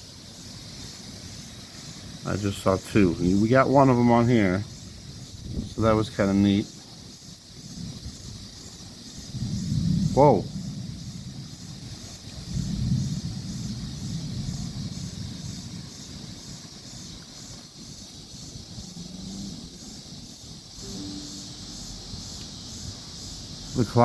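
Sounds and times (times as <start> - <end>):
steady high hiss: 0.0 - 24.0
wind rumble on microphone: 4.6 - 20.8.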